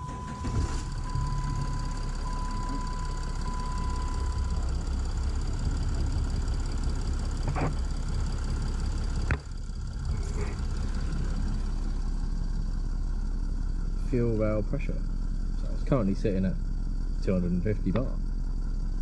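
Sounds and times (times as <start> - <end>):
electronic beep: 0.0 - 4.6
diesel engine idling: 0.0 - 19.0.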